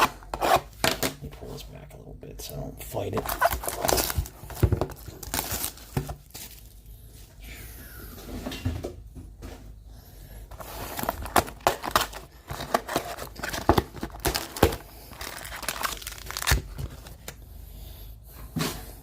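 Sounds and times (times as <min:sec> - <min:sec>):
plastic shrink wrap tearing: 0:03.2 - 0:06.8, 0:10.6 - 0:17.3.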